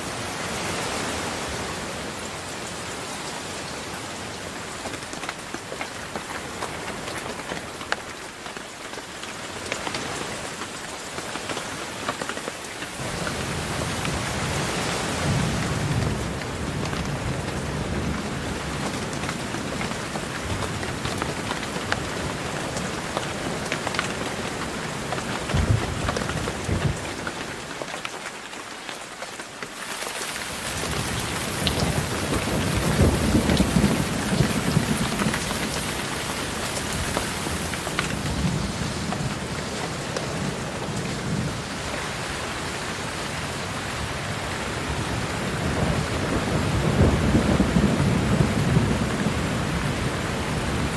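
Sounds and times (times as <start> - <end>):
heavy rain: 0.0 - 50.9
thunder rumbling: 30.4 - 42.1, 44.9 - 50.9.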